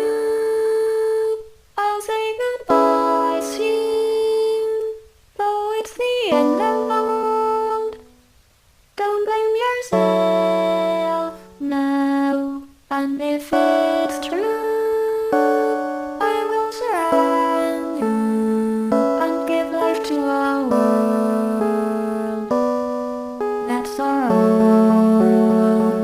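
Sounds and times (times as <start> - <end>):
melody of long held notes: 2.7 - 5.0, 6.3 - 8.2, 13.5 - 26.0.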